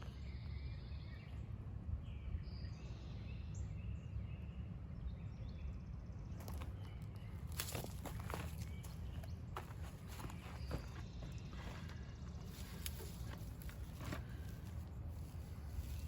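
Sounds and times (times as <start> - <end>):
steady low rumble: 0.0 - 16.0
birds chirping and whistling: 5.1 - 16.0.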